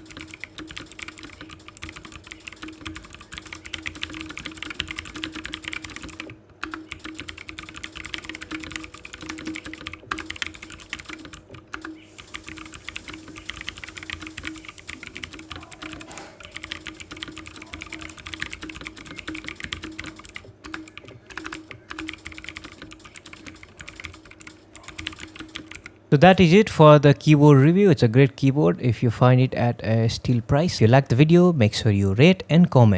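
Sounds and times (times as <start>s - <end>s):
fast typing on mechanical keyboard: 0.0s - 26.0s.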